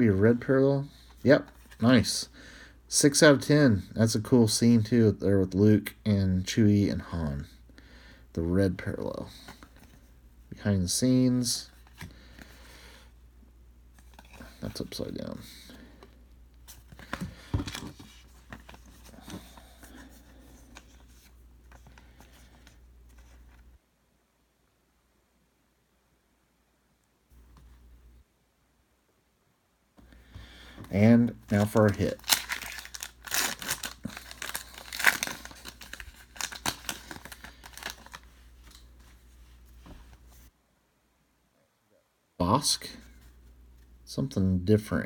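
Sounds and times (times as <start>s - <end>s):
cards being handled: 14.0s - 23.7s, 30.8s - 40.5s
wrapper crinkling: 31.4s - 39.0s.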